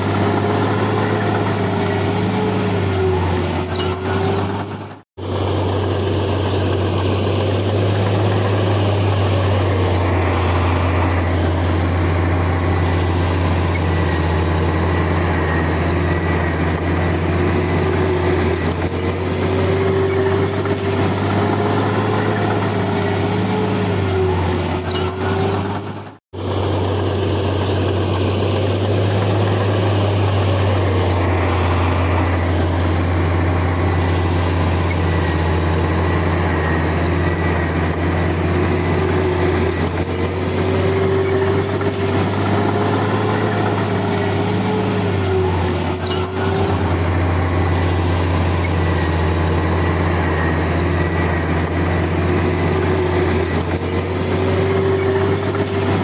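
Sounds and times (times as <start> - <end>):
diesel machinery engine drone: 0.0 - 56.0
engine whining tone: 0.0 - 56.0.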